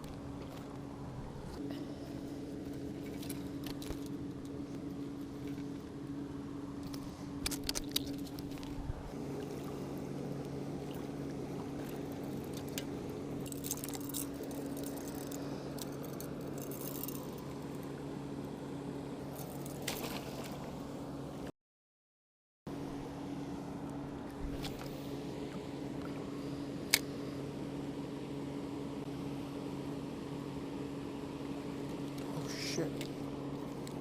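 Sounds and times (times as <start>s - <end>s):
engine humming: 0.0s - 21.5s
light metallic clinks and rattles: 13.4s - 17.4s.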